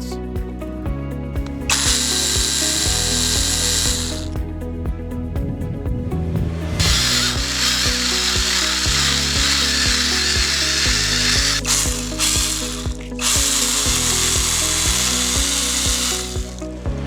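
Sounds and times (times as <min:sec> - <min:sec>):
background music with beat: 0:00.0 - 0:07.5
chainsaw high-pitched whir: 0:01.5 - 0:04.4, 0:06.8 - 0:16.6.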